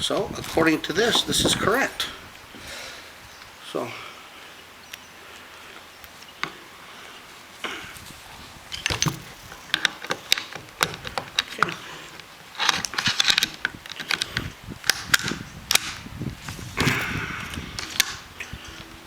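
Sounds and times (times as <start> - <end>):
rustling: 0.0 - 19.0
metallic rifle bolt clicks: 8.7 - 16.0, 17.7 - 18.9.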